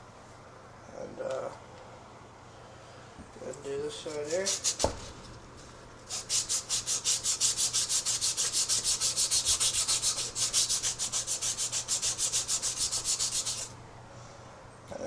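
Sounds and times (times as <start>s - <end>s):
sandpaper rubbing on metal: 4.2s - 4.9s, 6.0s - 13.7s.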